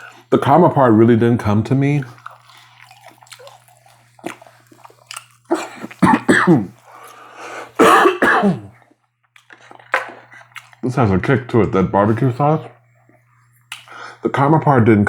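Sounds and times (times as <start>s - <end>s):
person coughing: 5.5s - 6.8s, 7.5s - 8.8s.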